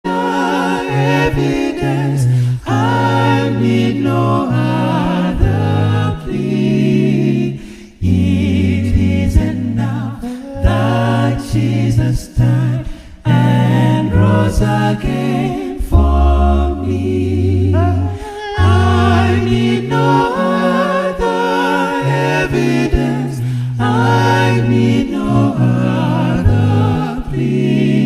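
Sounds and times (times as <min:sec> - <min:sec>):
unaccompanied voices singing hymn: 0:00.0 - 0:28.0.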